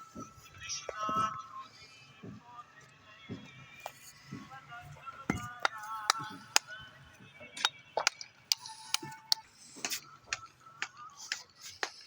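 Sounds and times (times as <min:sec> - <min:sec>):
steel trowels clinking on bricks: 0:07.6 - 0:12.0.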